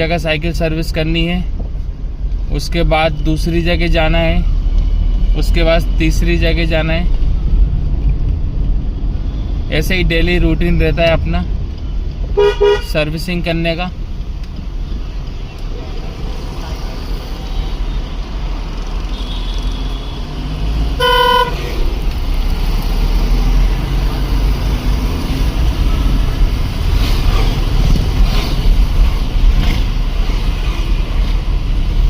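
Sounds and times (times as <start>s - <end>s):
street traffic rumble: 0.0s - 32.0s
vehicle horn honk: 12.4s - 12.9s, 19.1s - 20.2s, 21.0s - 21.6s.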